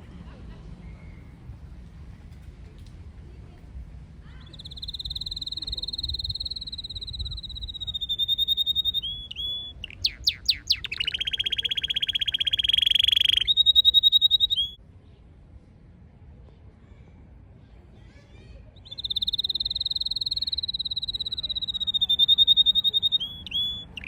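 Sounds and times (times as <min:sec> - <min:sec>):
canary singing trills: 0:04.4 - 0:14.8, 0:18.8 - 0:24.0.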